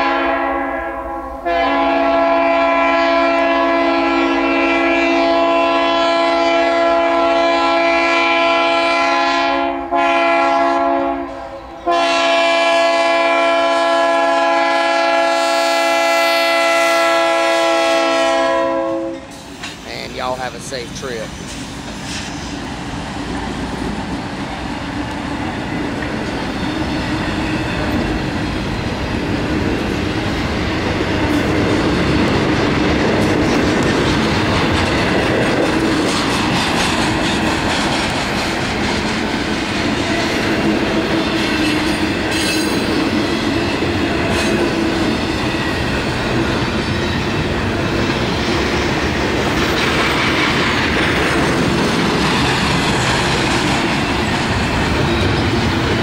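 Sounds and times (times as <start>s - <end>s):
freight train rumbling past: 0.0s - 56.0s
wheels clattering on rail joints: 31.3s - 39.6s.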